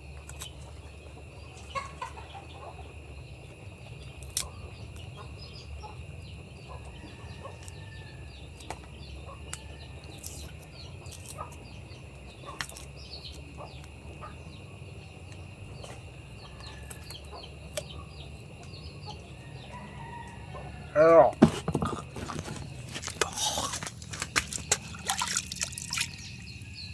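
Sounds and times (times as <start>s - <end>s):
small birds chirping: 0.0s - 26.9s
chickens clucking: 1.1s - 3.2s.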